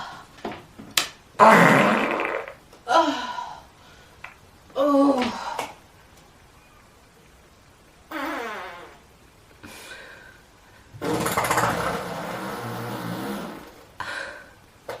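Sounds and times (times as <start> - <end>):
farting: 1.4 - 2.6, 8.1 - 9.1, 11.0 - 13.9.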